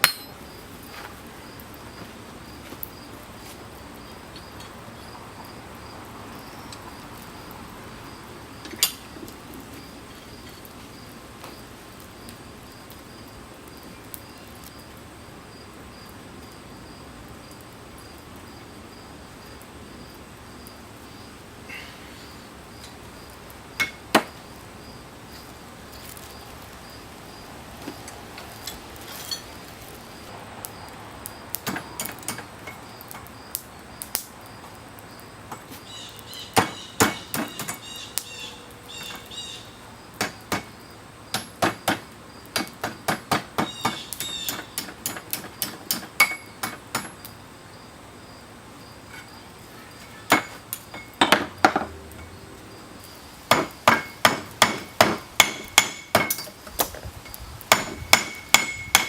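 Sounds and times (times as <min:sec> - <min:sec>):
hammer striking steel on anvil: 0:00.0 - 0:00.4, 0:42.6 - 0:47.1, 0:53.5 - 0:56.6, 0:57.7 - 0:59.0.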